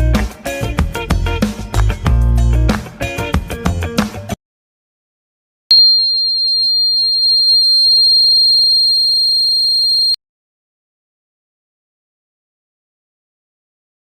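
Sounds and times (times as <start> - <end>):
high-pitched buzzer beep: 5.7 - 10.2.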